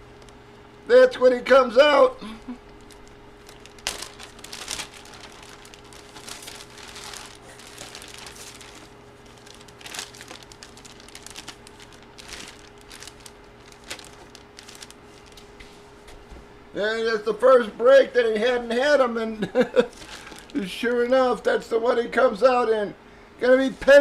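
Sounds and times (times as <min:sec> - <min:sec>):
plastic packaging rustling and crinkling: 0:02.7 - 0:16.3, 0:19.6 - 0:20.8.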